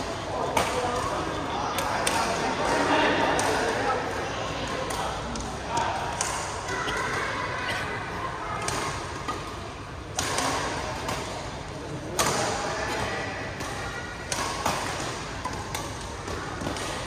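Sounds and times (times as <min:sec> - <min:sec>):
racket striking shuttlecock: 0:08.6 - 0:11.5, 0:12.1 - 0:17.0.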